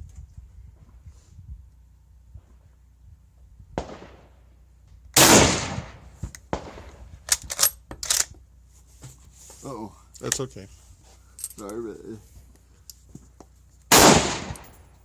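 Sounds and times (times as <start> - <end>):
rifle shot with echo: 3.8 - 4.4, 5.2 - 7.0, 13.9 - 14.9.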